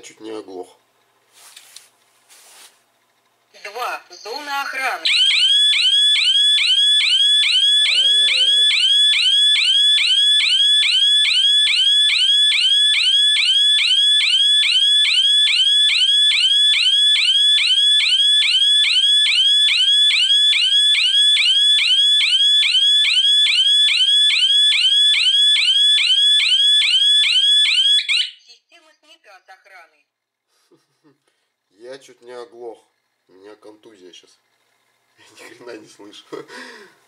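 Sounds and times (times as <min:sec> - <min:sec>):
loud alarm siren whooping: 0:05.0 - 0:28.4.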